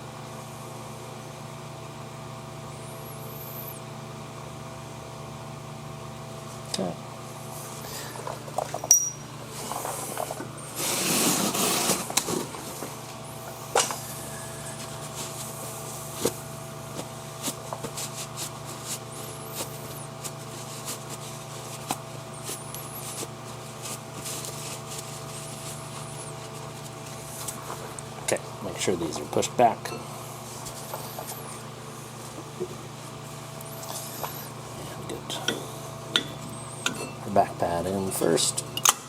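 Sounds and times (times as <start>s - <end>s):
steady low hum: 0.0s - 39.0s
scraping rustle: 9.5s - 13.0s, 17.0s - 28.0s.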